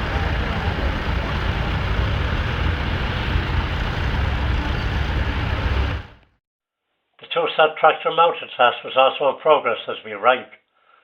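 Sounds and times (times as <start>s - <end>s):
tractor engine running: 0.0s - 6.3s.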